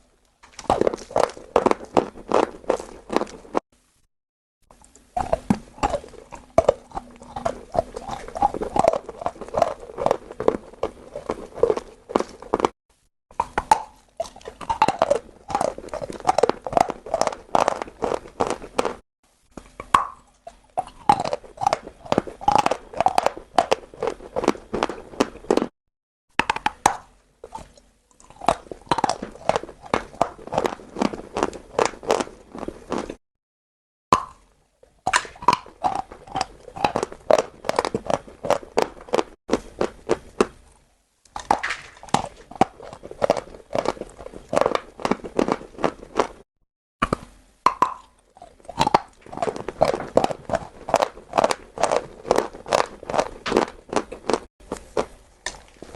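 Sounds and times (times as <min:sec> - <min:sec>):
person crunching chalk: 0:00.4 - 0:03.6, 0:14.7 - 0:19.0.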